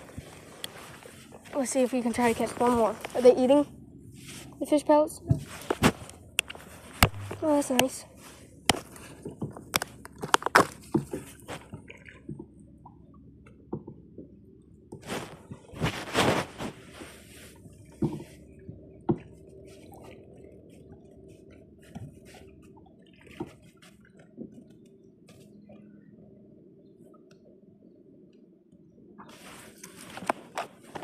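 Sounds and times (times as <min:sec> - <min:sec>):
water dripping and splashing: 0:05.2 - 0:25.8
small knocks: 0:08.7 - 0:13.0, 0:17.9 - 0:19.4.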